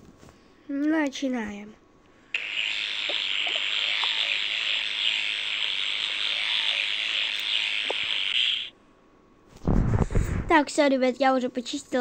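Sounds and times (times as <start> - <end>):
tooth-brushing hiss: 2.4 - 8.7.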